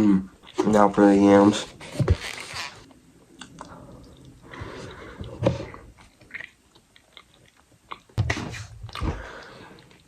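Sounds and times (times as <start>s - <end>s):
person chewing food: 3.2s - 10.0s.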